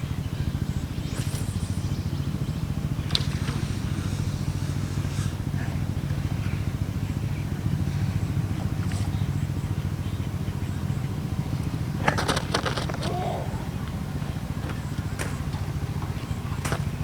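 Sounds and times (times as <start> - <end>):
engine running with fast pulse: 0.0 - 17.0
faint clicks: 3.0 - 4.0.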